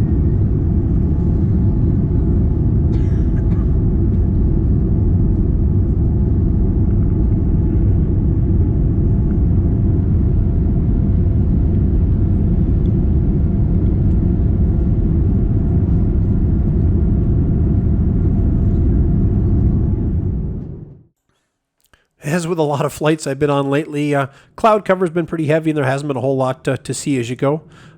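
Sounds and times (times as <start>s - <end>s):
aircraft cabin engine rumble: 0.0s - 21.1s.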